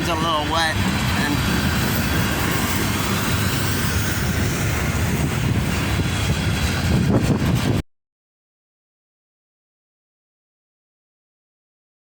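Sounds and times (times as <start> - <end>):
freight train rumbling: 0.0 - 7.8.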